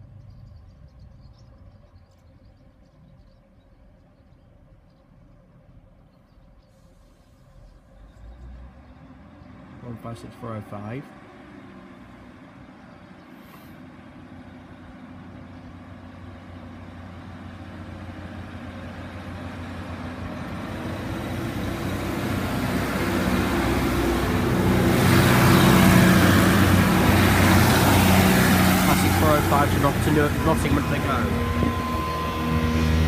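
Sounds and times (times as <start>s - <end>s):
train diesel engine hum: 0.0s - 33.0s
train wheel noise: 14.2s - 33.0s.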